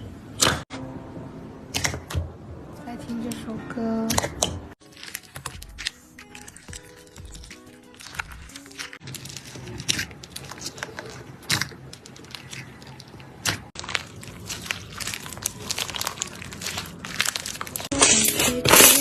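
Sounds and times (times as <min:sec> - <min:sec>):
faint background music: 0:00.7 - 0:13.0
slime crackling and popping: 0:04.1 - 0:19.0.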